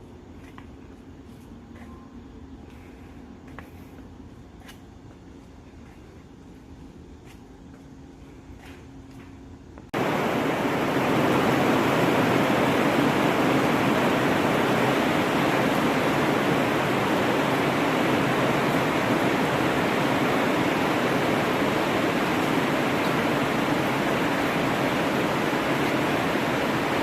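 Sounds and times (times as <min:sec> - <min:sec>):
steady rushing noise: 0:09.9 - 0:27.0.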